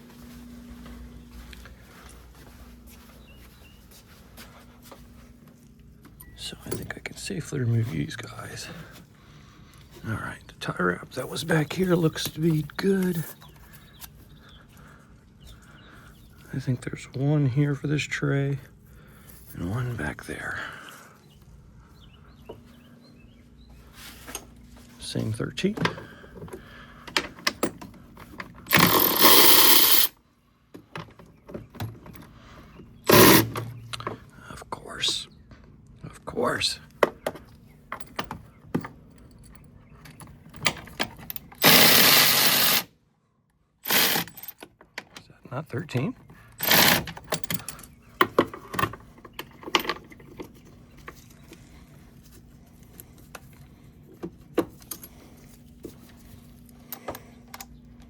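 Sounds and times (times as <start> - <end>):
faint steady hum: 0.0 - 58.0
metal hand tools clinking: 28.7 - 30.1
power tool spinning bolt: 28.7 - 30.2, 33.1 - 33.6, 41.5 - 42.9, 43.8 - 44.5, 46.6 - 47.2.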